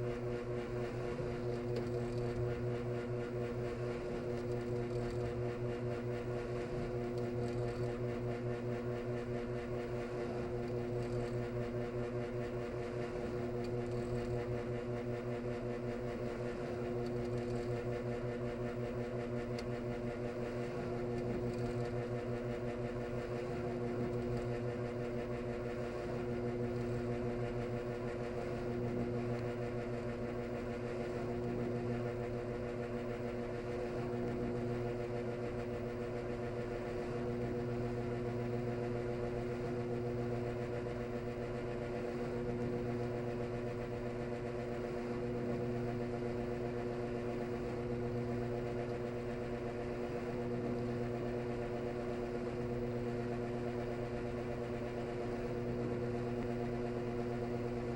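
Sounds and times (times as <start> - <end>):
washing machine drain hum: 17.8 - 57.9.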